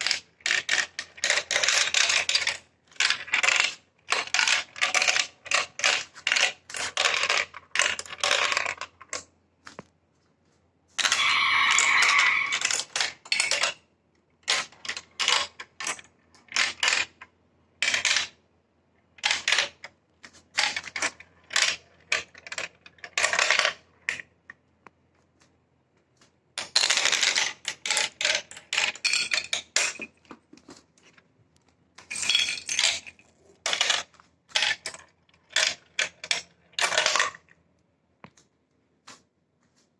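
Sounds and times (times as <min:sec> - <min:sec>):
marbles rattling down plastic track: 0:00.0 - 0:09.2, 0:11.0 - 0:13.8, 0:14.5 - 0:17.2, 0:20.5 - 0:24.2, 0:26.6 - 0:30.1, 0:32.0 - 0:37.5.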